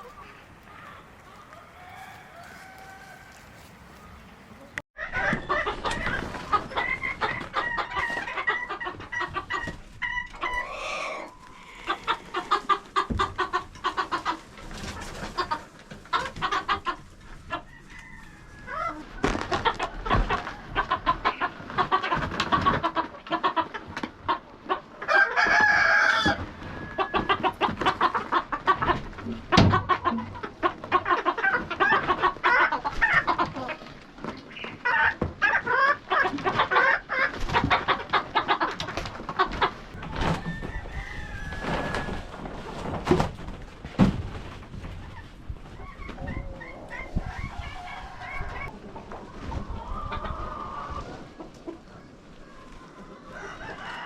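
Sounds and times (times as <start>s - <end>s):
chickens clucking: 0.0s - 54.0s
rooster crowing: 0.8s - 3.6s, 25.1s - 27.1s, 40.4s - 42.3s, 53.3s - 54.0s.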